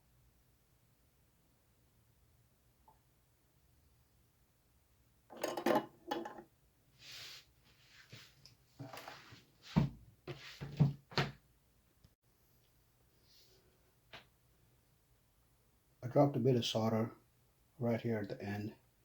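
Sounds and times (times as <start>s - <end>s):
tools clattering on workbench: 5.3s - 6.4s.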